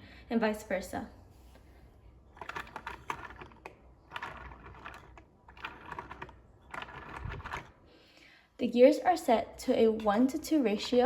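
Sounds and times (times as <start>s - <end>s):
toy gears clicking and rattling: 2.4s - 7.8s.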